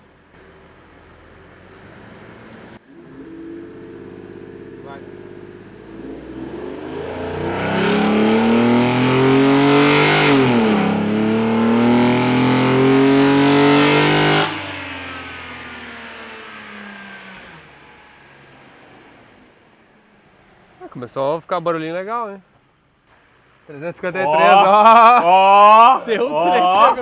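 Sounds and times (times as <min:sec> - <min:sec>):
engine revving at full throttle: 0:01.5 - 0:19.6.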